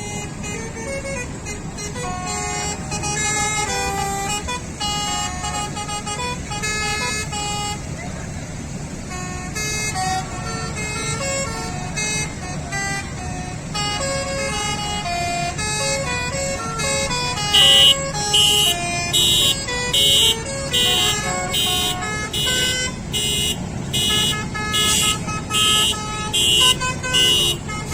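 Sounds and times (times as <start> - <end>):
musical air horn melody: 0.0 - 8.0, 9.0 - 27.9
low engine rumble: 0.0 - 27.9
short loud horn blasts: 13.7 - 27.9.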